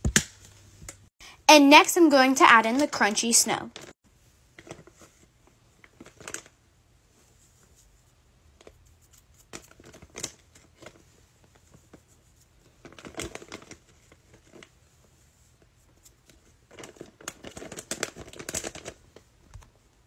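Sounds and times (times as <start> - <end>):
crinkling crunchy slime: 15.8 - 19.4.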